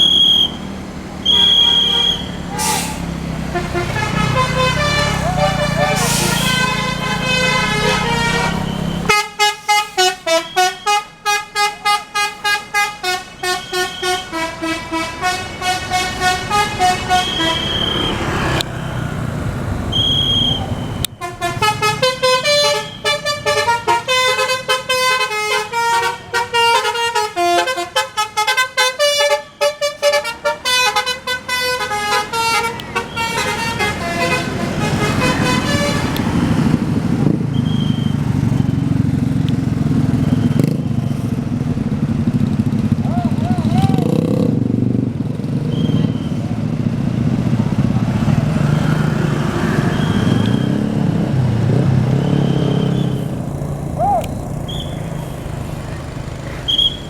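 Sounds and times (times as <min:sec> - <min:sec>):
bus engine noise: 0:00.0 - 0:57.0
musical air horn playing tunes: 0:01.3 - 0:18.2, 0:21.2 - 0:36.3.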